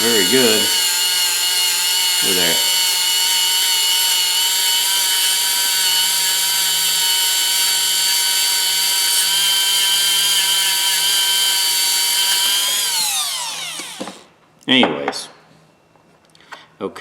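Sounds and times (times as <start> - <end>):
power tool abrasive wheel whine: 0.0 - 14.3.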